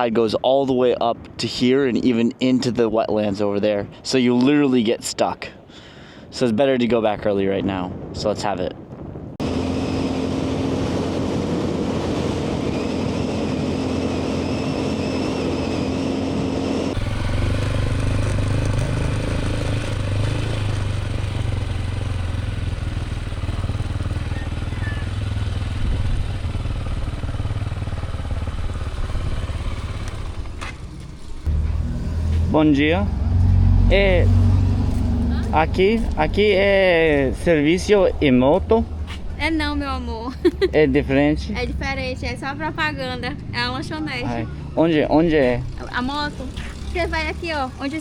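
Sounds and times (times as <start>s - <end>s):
motorcycle engine running: 9.4s - 37.7s, 45.5s - 48.0s.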